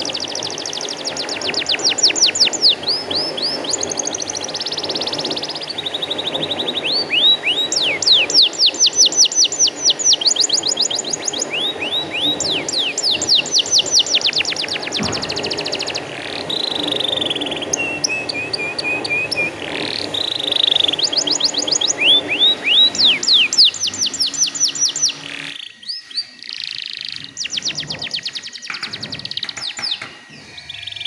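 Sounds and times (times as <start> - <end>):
canary singing: 0.0 - 31.0.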